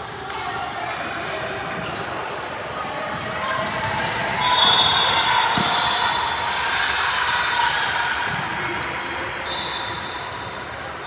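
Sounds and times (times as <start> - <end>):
sneaker squeak: 1.5 - 6.2, 8.3 - 11.0
basketball bouncing on court: 3.1 - 6.2.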